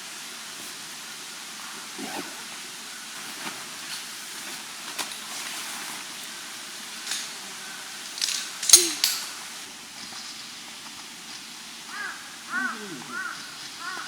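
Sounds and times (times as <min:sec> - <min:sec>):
crow cawing: 0:11.9 - 0:14.0.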